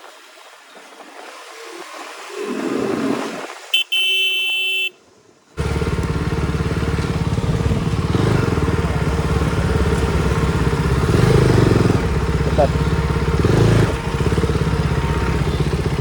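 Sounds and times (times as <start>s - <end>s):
traffic noise: 3.7s - 16.0s
vehicle horn honking: 3.8s - 5.0s, 12.6s - 16.0s
motorcycle engine running: 5.6s - 16.0s.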